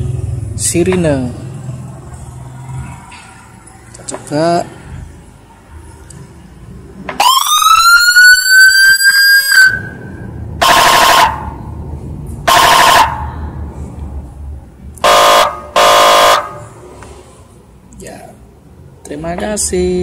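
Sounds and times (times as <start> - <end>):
electronic siren wail: 7.2 - 11.6, 12.5 - 13.4
loud horn-like blasts: 15.0 - 16.7.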